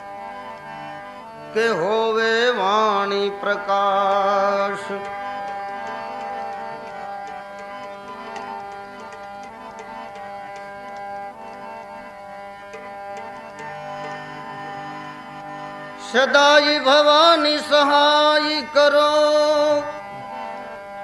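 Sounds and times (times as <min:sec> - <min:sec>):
tabla strokes: 0:04.4 - 0:15.4.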